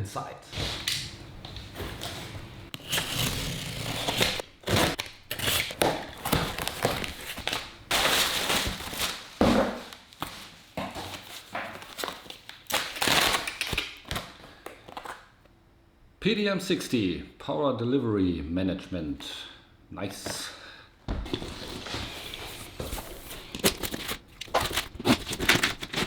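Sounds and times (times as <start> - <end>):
packaging rustling and tearing: 0.6 - 15.3, 21.2 - 26.0
knocks of things handled: 21.1 - 26.0.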